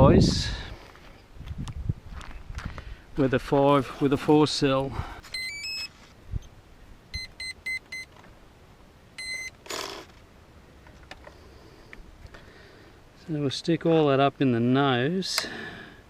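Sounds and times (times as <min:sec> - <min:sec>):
longer electronic beep: 0:05.3 - 0:05.9, 0:07.1 - 0:08.1, 0:09.2 - 0:09.5
short electronic beeps: 0:05.3 - 0:05.9, 0:07.1 - 0:08.1, 0:09.2 - 0:09.6.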